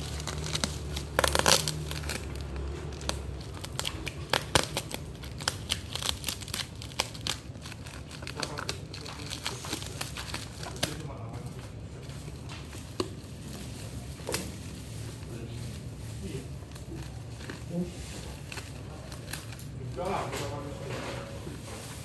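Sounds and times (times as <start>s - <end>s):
sharp crackles and clicks: 0.0s - 11.1s
packaging crinkling and rustling: 0.0s - 22.0s.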